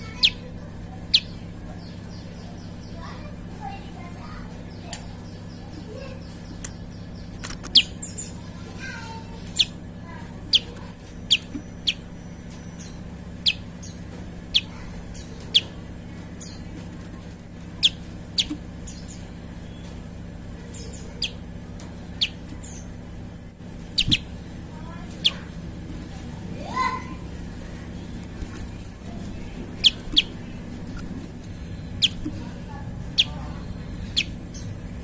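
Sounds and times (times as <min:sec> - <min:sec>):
steady low hum: 0:00.0 - 0:35.0.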